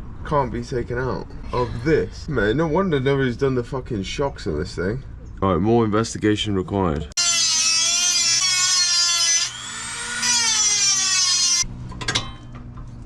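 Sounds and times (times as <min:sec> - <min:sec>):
power tool motor whining: 0:07.2 - 0:11.6.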